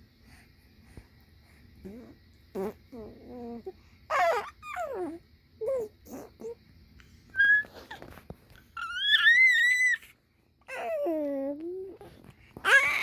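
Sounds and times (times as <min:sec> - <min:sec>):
baby squeaking and cooing: 0:01.8 - 0:06.6, 0:07.3 - 0:10.1, 0:10.7 - 0:13.0
baby high squeal: 0:04.1 - 0:05.1, 0:07.4 - 0:07.7, 0:08.8 - 0:10.1, 0:12.6 - 0:13.0.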